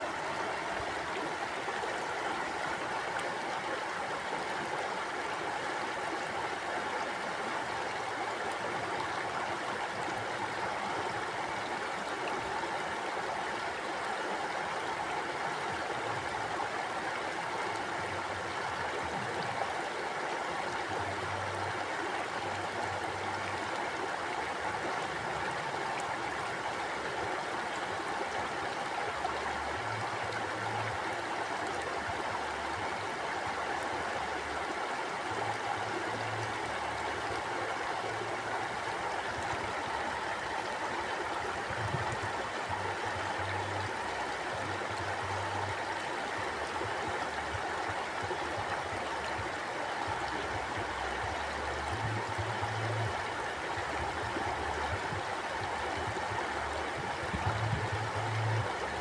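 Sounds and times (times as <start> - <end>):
river flowing over rocks: 0.0 - 59.0.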